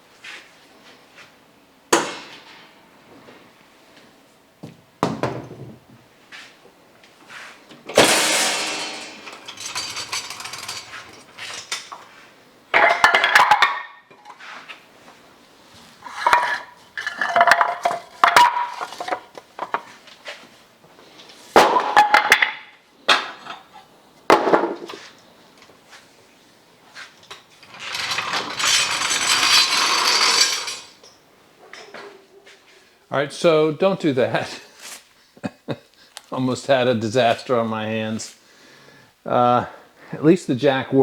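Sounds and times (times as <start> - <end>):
long metal crash: 7.9 - 11.0
heavy steel parts clanking: 7.9 - 12.0, 27.6 - 31.9.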